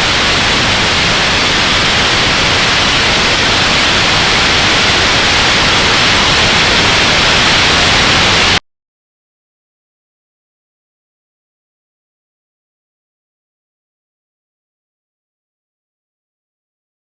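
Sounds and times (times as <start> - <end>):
loud static hiss: 0.0 - 8.6.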